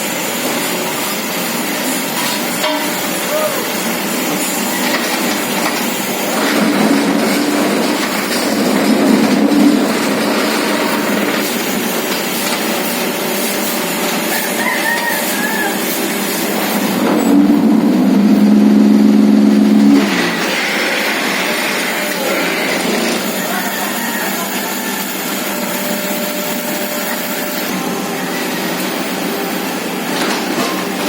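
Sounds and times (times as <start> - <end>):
machine running: 0.0 - 31.0
rooster crowing: 14.2 - 16.1, 23.2 - 25.7.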